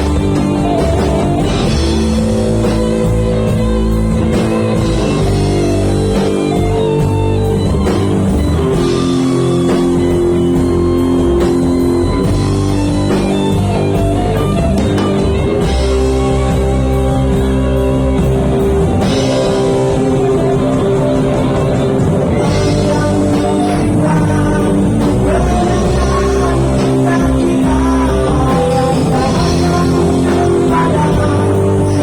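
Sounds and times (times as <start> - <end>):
drum kit beat: 0.0 - 32.0
electric guitar chords: 0.0 - 32.0.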